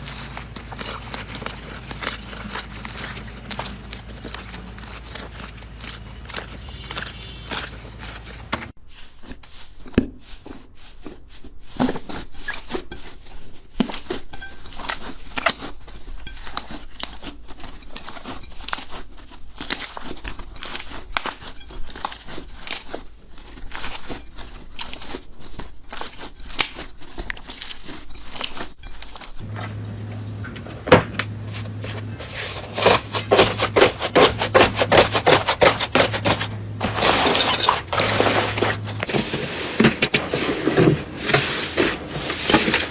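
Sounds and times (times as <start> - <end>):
steady low hum: 29.4 - 42.9.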